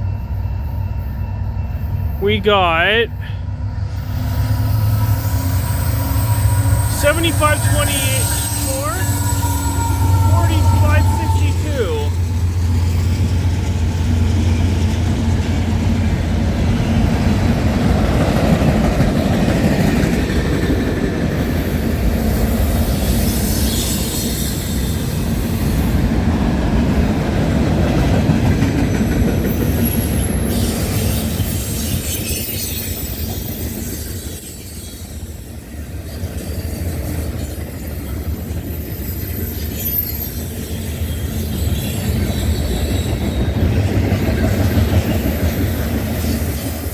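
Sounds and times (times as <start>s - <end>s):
train wheels rumbling on rail: 3.3s - 46.9s
high-pitched wheel squeals: 4.0s - 12.2s, 38.7s - 43.9s.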